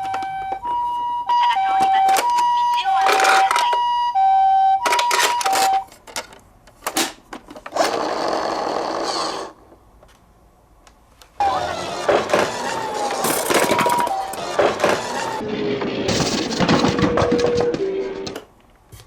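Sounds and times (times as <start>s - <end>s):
ambulance two-tone siren: 0.0s - 5.9s, 11.4s - 15.4s.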